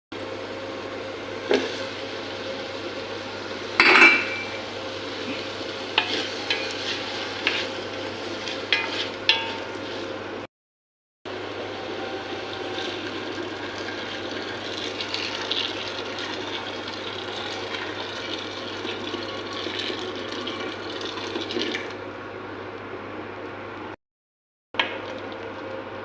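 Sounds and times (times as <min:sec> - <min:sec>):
liquid hissing in cooking pot: 0:01.3 - 0:10.4.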